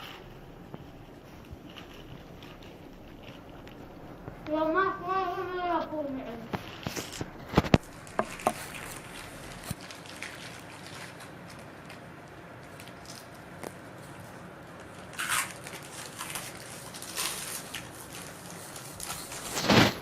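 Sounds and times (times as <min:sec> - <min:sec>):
chip bag crinkling: 0:00.0 - 0:20.0
crunching potato chips: 0:06.4 - 0:20.0.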